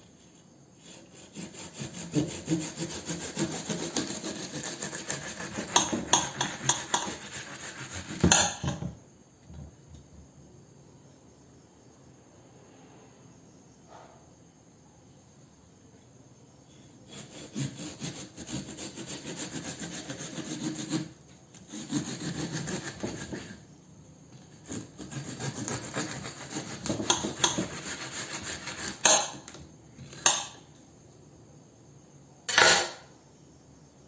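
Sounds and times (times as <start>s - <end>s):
hand saw rasping through watermelon: 0.8s - 8.6s, 17.0s - 23.7s, 24.4s - 30.5s.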